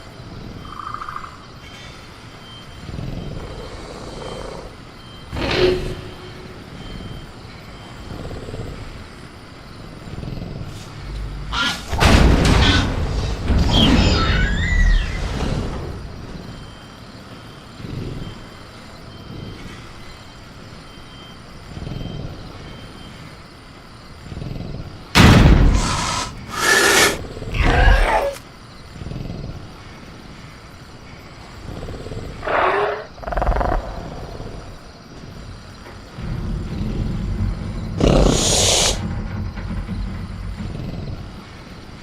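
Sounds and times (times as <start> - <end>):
faint crickets: 0.0 - 42.0
velociraptor roaring and shrieking: 13.6 - 15.4, 25.8 - 28.4, 31.7 - 34.8, 36.2 - 41.8.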